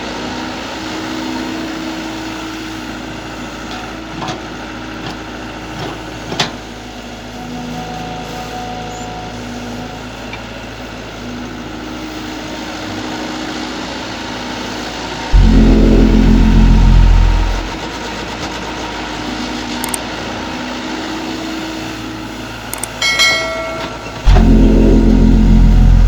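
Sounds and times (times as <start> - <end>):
excavator engine running: 15.3 - 17.9, 19.8 - 20.0, 22.6 - 26.0
loud deep drone: 15.3 - 17.9, 23.4 - 26.0
sharp click: 22.8 - 24.4.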